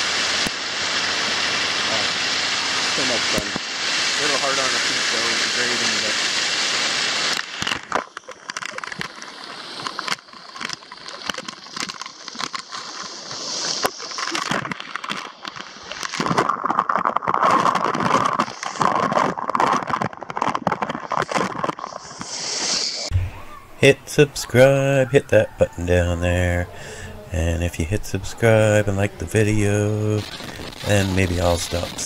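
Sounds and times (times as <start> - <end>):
short crackling clicks: 7.2 - 23.2.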